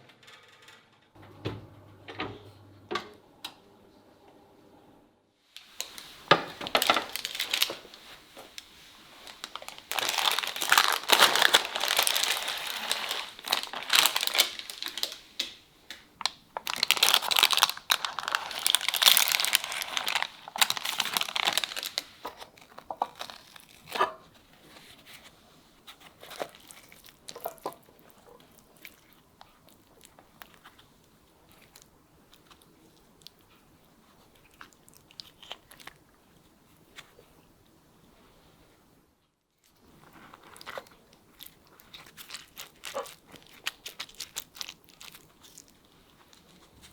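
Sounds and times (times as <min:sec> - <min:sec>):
baking paper tearing and crumpling: 0:05.6 - 0:15.6, 0:16.6 - 0:24.0, 0:40.2 - 0:46.9.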